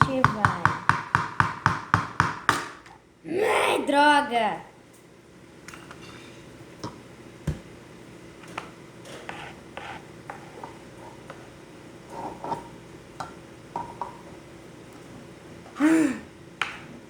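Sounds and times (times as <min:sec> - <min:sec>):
kitchen utensils and dishes clinking: 0:05.7 - 0:06.5.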